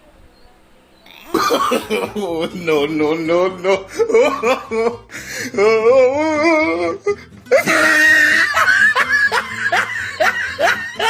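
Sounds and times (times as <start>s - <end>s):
loud burst of laughter: 7.5s - 11.0s.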